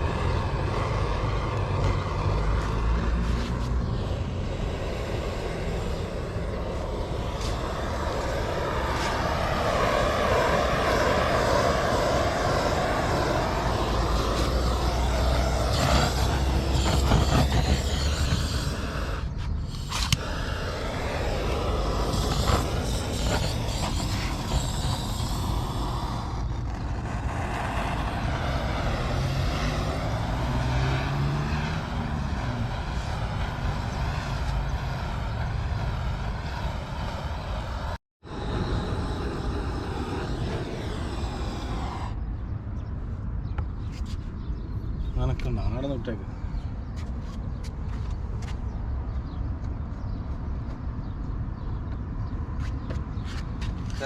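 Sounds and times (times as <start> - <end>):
gas torch flame hissing: 0.0 - 42.3.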